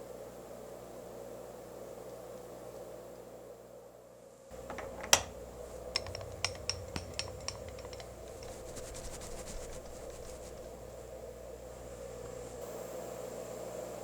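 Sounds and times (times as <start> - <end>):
metal tools clicking and tapping: 4.5 - 10.8
faint rapid ticking: 4.5 - 11.0
low steady hum: 4.5 - 14.0.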